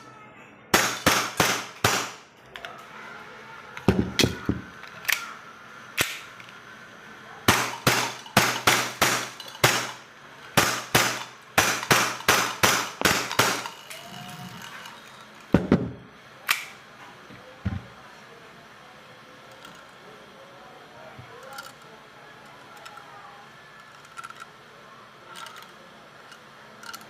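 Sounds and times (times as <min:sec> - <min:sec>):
airsoft pistol shots: 0:00.7 - 0:02.2, 0:07.5 - 0:10.0, 0:10.6 - 0:13.7.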